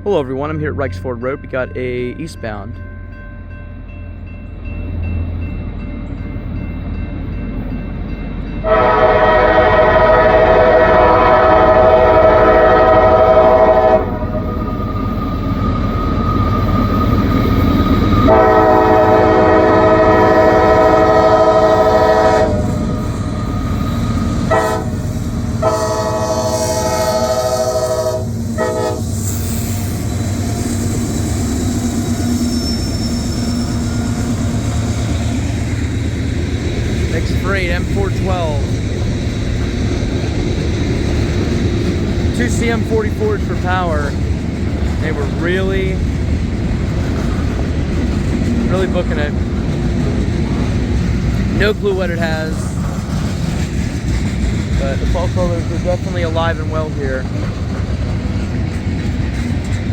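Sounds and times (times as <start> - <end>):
diesel freight train rumble: 0.0 - 59.9
locomotive air horn blasts: 8.6 - 14.4, 18.3 - 22.8, 24.4 - 25.0, 25.6 - 29.1.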